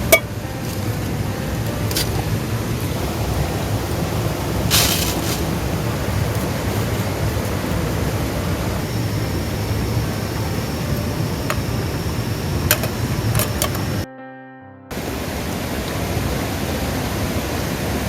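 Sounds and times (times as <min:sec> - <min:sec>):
steady rushing noise: 0:00.0 - 0:14.1, 0:14.9 - 0:18.0
short sharp burst: 0:03.0 - 0:11.1.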